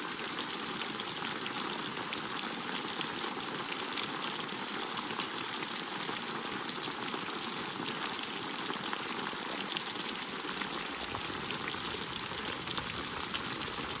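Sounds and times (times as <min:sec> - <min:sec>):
steady rain: 0:01.2 - 0:14.0
raindrops ticking on surfaces: 0:10.4 - 0:14.0.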